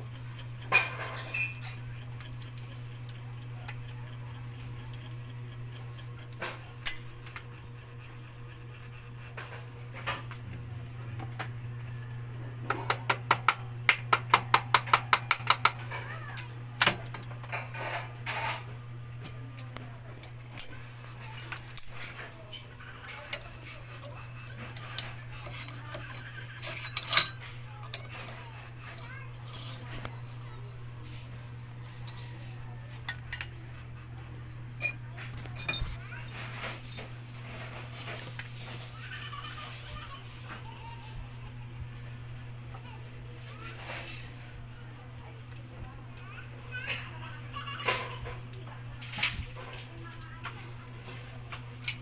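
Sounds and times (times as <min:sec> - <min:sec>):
metallic clinks: 0:06.8 - 0:07.1.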